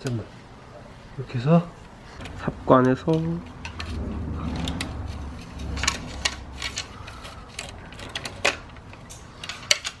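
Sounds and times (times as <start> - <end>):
low rumble: 3.4 - 7.9.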